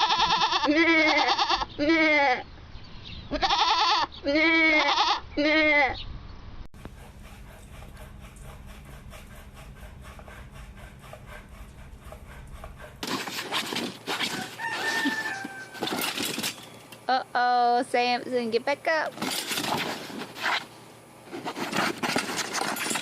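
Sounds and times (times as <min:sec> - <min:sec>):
low steady rumble: 0:05.2 - 0:19.1
rooster crowing: 0:14.2 - 0:16.2
clatter: 0:21.6 - 0:23.0.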